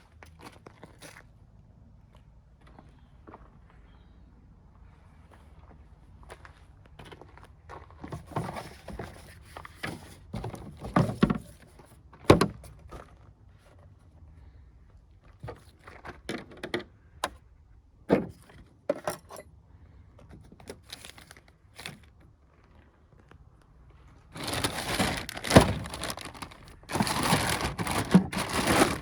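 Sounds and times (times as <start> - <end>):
clatter of hard objects: 24.4 - 29.0.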